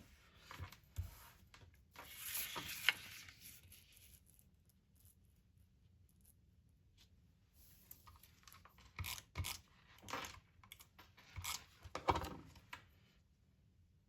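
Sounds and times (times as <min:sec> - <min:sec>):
paper rustling and scraping: 0:00.0 - 0:04.4.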